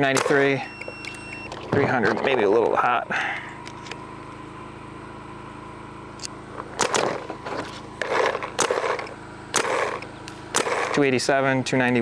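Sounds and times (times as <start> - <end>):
paintball marker shots: 0.0 - 0.6, 6.7 - 11.1
steady low hum: 0.0 - 12.0.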